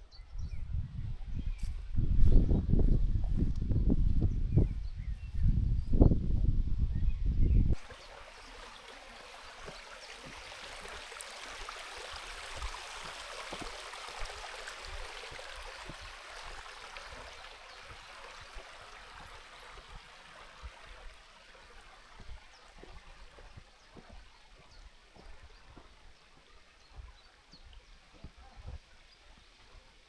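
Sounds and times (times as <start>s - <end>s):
running water rushing: 7.8s - 30.0s.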